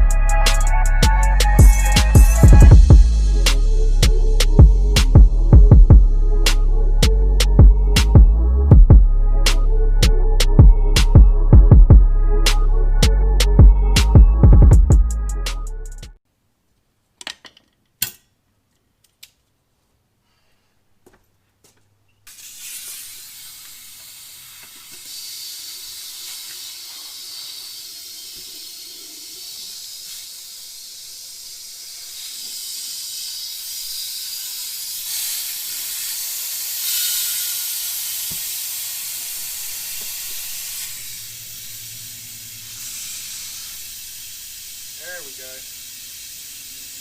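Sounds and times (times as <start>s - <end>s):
compressed air hissing into tire: 22.3s - 47.0s.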